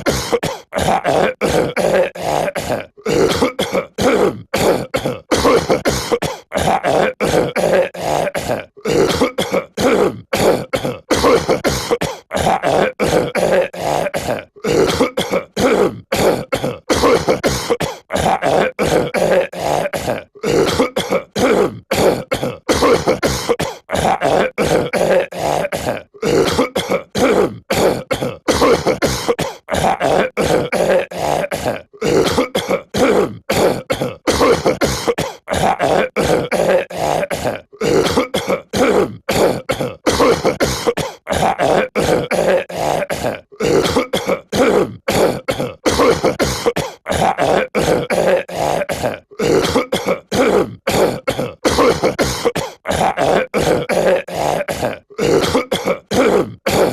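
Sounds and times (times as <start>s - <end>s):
cartoon voice clearing throat: 0.0s - 56.9s.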